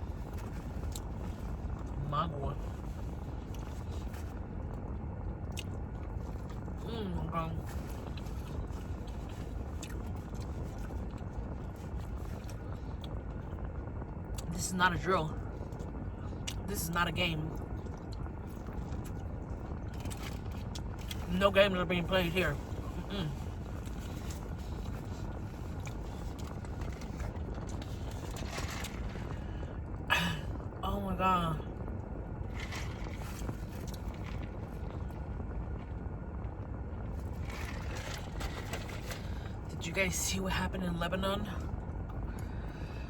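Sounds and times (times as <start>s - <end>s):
close chewing with mouth clicks: 5.4s - 6.8s, 7.9s - 13.6s, 22.7s - 29.6s
car cabin rumble: 32.5s - 35.2s.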